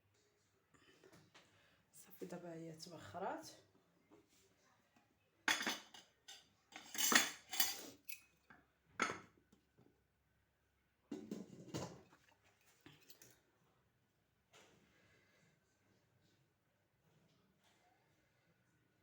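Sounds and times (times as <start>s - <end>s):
metal pots clattering: 5.5s - 8.2s, 9.0s - 9.3s, 11.1s - 12.3s.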